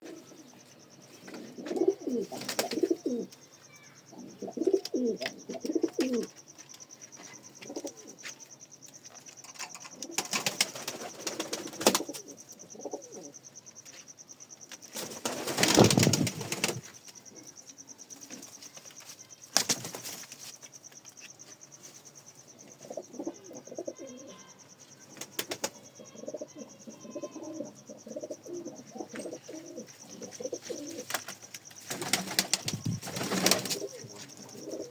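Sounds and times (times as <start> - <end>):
pigeons cooing: 1.2 - 3.4, 4.1 - 6.3, 9.6 - 13.4, 22.7 - 24.5, 25.1 - 34.9
wings flapping: 2.3 - 3.0, 9.7 - 12.2, 14.7 - 16.9, 18.3 - 20.6, 25.1 - 25.8, 30.2 - 34.9.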